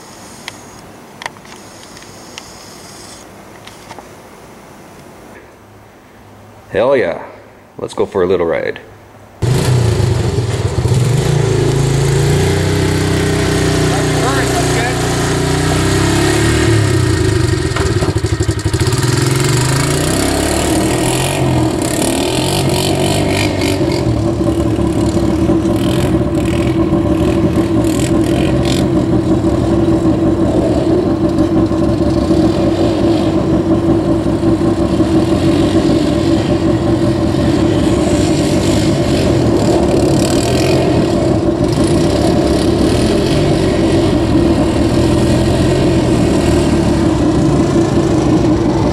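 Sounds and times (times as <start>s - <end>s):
single-cylinder engine running: 9.4s - 48.9s.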